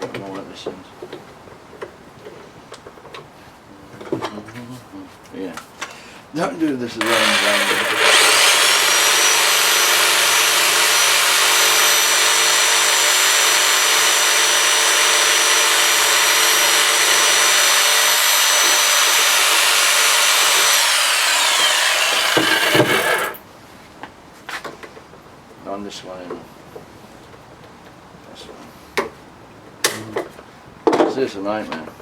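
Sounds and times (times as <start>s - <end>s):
jigsaw cutting plastic: 7.0s - 23.4s.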